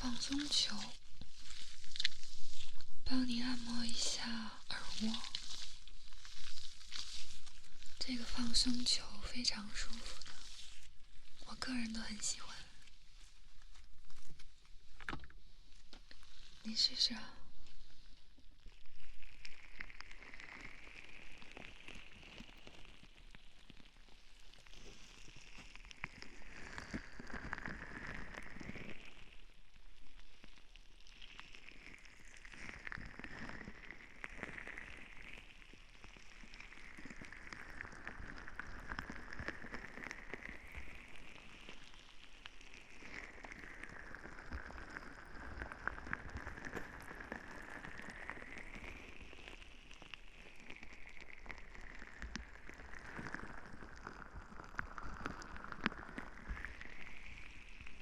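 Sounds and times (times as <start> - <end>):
ball rubbing on microphone: 0.0 - 10.9.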